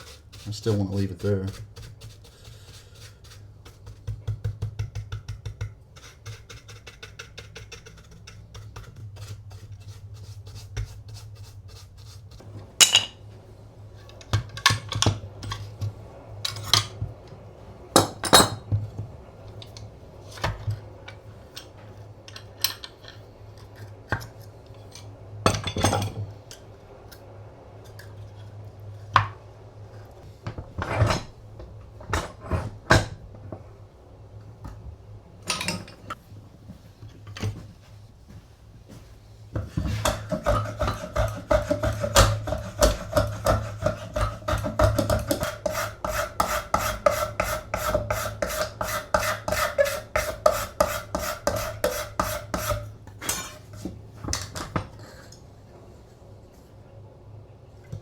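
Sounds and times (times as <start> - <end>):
rubbing strokes on wood: 0.0 - 4.2, 39.7 - 52.9
steady low hum: 0.0 - 58.0
wood and metal clinks and knocks: 12.4 - 13.3, 19.5 - 23.8, 24.8 - 26.3, 35.4 - 36.2.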